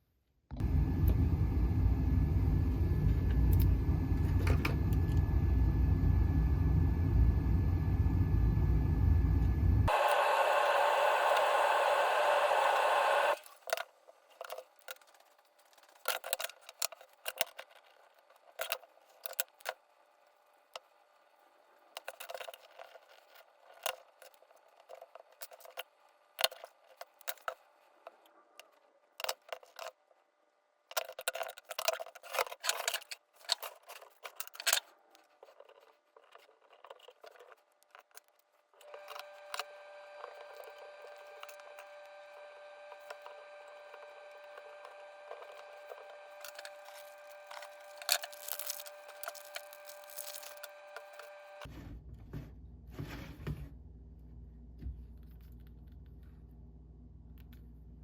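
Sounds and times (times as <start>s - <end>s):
loud steady whirring: 0.5s - 13.4s
small parts clicking and tapping: 13.4s - 21.0s, 21.9s - 30.0s, 30.9s - 39.7s, 43.9s - 51.7s.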